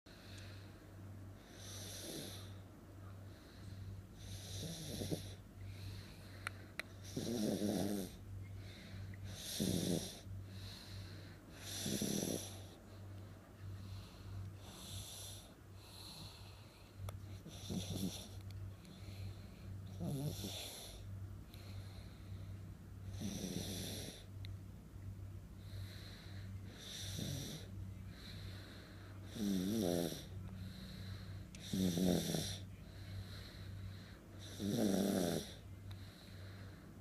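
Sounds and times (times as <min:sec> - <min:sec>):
baby snoring: 0:04.2 - 0:05.4, 0:07.0 - 0:08.2, 0:09.3 - 0:10.3, 0:11.6 - 0:12.7, 0:17.4 - 0:18.4, 0:19.9 - 0:21.1, 0:23.1 - 0:24.3, 0:26.7 - 0:27.7, 0:29.2 - 0:30.4, 0:31.6 - 0:33.5, 0:34.4 - 0:35.6.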